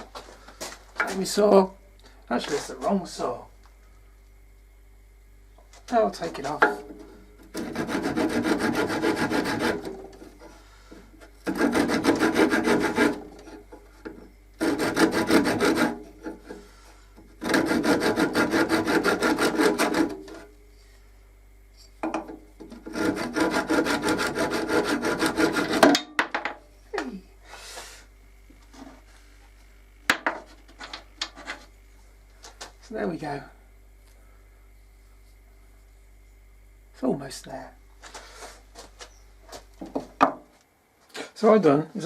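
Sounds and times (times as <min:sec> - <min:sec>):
hand saw cutting wood: 0:07.5 - 0:10.4, 0:11.2 - 0:16.7, 0:17.4 - 0:20.5, 0:22.7 - 0:26.0.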